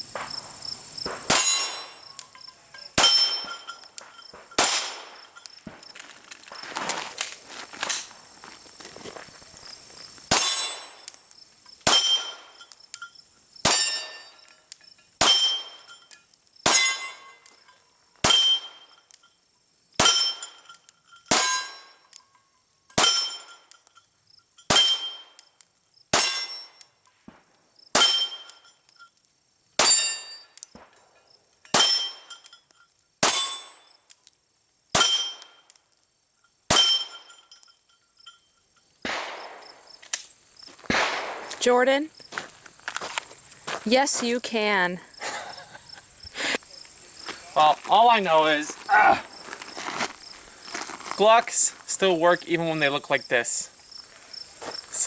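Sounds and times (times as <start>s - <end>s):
pistol shots: 0.2s - 2.1s, 3.0s - 3.6s, 4.3s - 5.9s, 10.3s - 11.1s, 11.8s - 12.6s, 16.6s - 17.2s, 21.3s - 21.8s, 24.7s - 25.3s, 27.9s - 28.6s, 29.8s - 30.2s, 33.2s - 33.8s, 34.9s - 35.5s, 39.0s - 39.9s, 40.9s - 41.7s
metallic clang of steel target: 1.0s - 5.9s, 10.3s - 19.3s, 20.0s - 22.3s, 22.9s - 25.5s, 26.1s - 26.9s, 28.0s - 29.1s, 29.8s - 33.9s, 34.9s - 35.8s, 36.7s - 38.4s.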